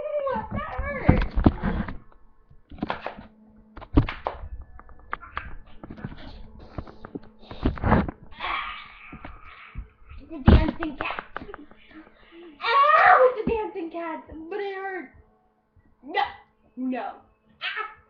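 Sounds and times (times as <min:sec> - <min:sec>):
thumps and knocks: 0:00.4 - 0:08.4, 0:09.1 - 0:12.2, 0:13.4 - 0:14.5.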